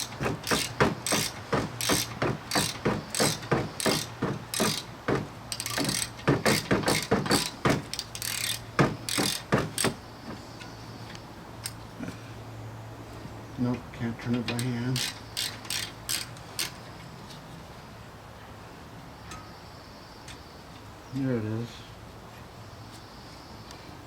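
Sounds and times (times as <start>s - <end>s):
ratchet wrench clicking: 0.0s - 4.9s, 5.5s - 10.0s, 14.6s - 16.8s.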